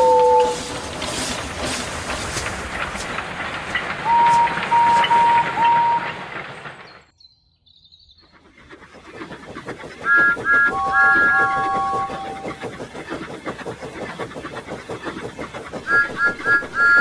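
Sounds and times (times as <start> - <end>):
train whistle toots: 0.0 - 0.7, 4.0 - 6.2, 10.0 - 12.6, 15.8 - 17.0
steam locomotive running: 0.0 - 7.2, 8.2 - 17.0
wheels rattling over rails: 0.0 - 7.2, 8.2 - 17.0.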